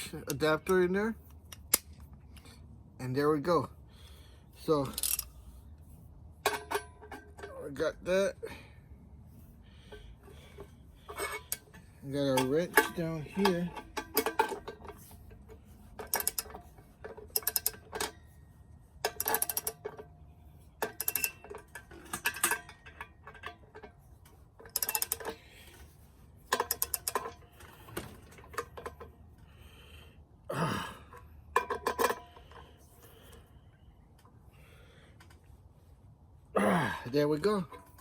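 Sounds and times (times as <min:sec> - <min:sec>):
socket ratchet clicking: 0:04.9 - 0:05.3, 0:16.0 - 0:16.6, 0:17.3 - 0:18.1, 0:19.1 - 0:19.9, 0:20.8 - 0:21.4, 0:24.7 - 0:25.4, 0:26.6 - 0:27.4.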